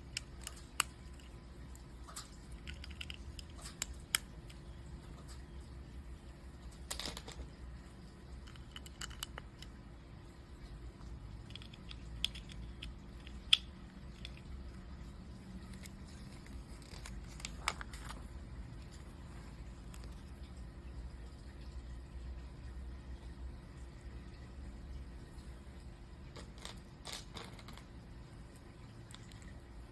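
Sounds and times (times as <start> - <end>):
plastic pieces clicking together: 0.0 - 1.4, 2.2 - 4.7, 8.4 - 9.8, 11.4 - 14.5, 26.4 - 27.8.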